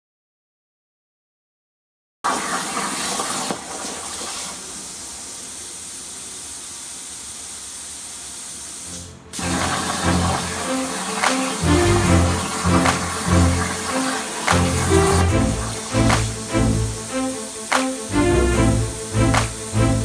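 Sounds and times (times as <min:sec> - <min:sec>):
steady hiss: 0:02.6 - 0:20.0
music with bass line: 0:11.6 - 0:20.0.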